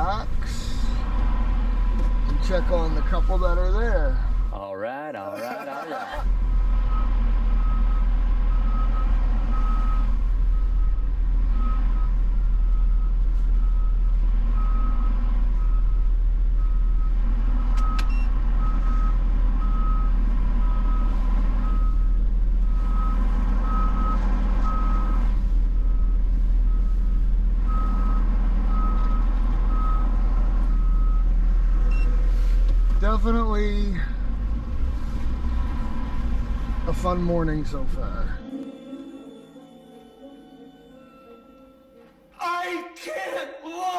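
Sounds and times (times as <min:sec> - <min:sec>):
engine droning: 0:00.0 - 0:04.7, 0:05.4 - 0:41.7
reversing alarm beeping: 0:06.9 - 0:17.2, 0:17.8 - 0:25.2.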